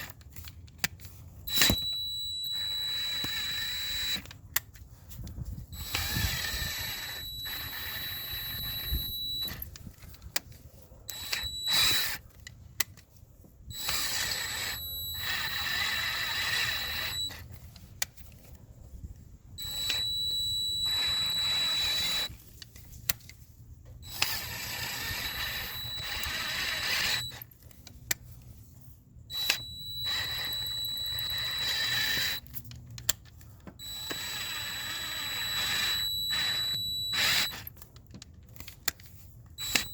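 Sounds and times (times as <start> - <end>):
electric drill whining: 1.5 - 4.3, 5.8 - 9.7, 11.1 - 12.2, 13.7 - 17.5, 19.6 - 22.4, 24.0 - 27.4, 29.3 - 32.5, 33.8 - 37.7, 39.6 - 39.9.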